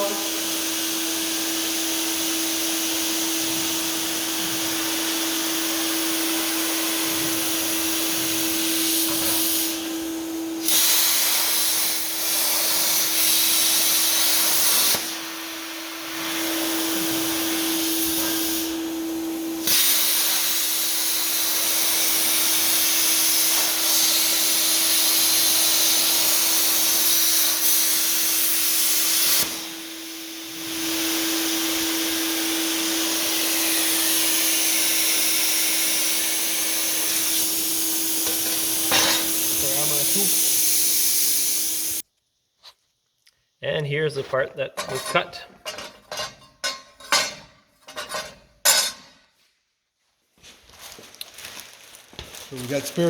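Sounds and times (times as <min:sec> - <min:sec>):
plasma cutter arc hissing: 0:00.0 - 0:18.9, 0:19.6 - 0:42.0.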